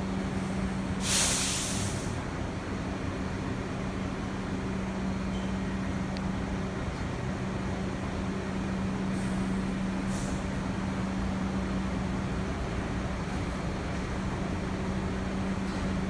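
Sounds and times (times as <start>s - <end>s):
air hiss: 1.0s - 2.2s.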